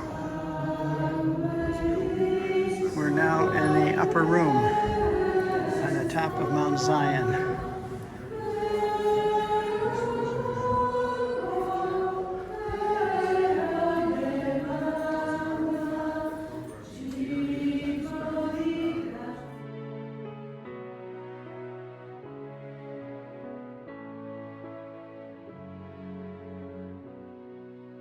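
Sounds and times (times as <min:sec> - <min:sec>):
group singing a hymn: 0:00.0 - 0:20.2
soft instrumental music: 0:00.0 - 0:28.0.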